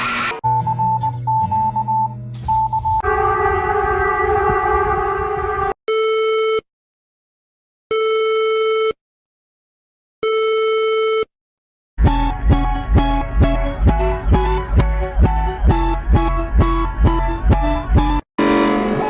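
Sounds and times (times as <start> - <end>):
guitar music: 12.0 - 19.0.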